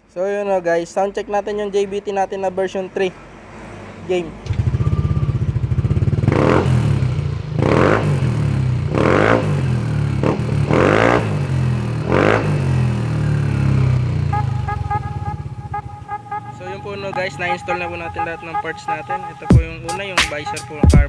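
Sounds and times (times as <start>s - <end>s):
scooter engine idling and revving: 4.4s - 18.7s.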